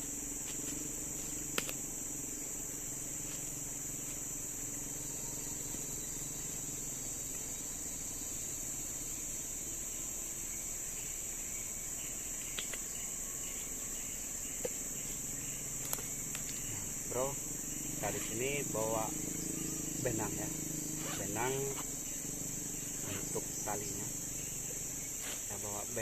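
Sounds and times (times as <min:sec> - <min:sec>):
forest insects droning: 0:00.0 - 0:26.0
faint sharp ticks: 0:01.5 - 0:01.8, 0:12.5 - 0:12.9.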